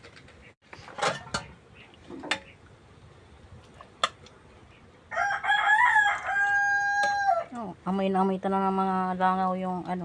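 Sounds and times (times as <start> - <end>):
rooster crowing: 5.1 - 7.5.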